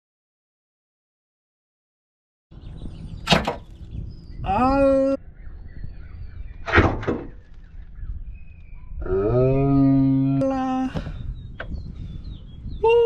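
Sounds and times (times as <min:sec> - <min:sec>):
man groaning with effort: 0:09.0 - 0:11.1.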